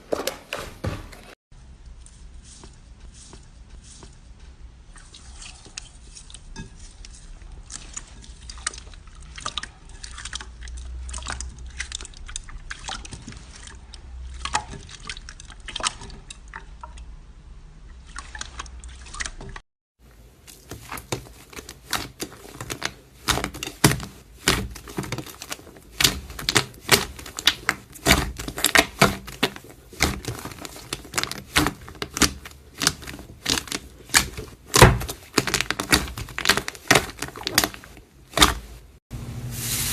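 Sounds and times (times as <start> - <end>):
slime squished by hand: 20.4 - 38.8.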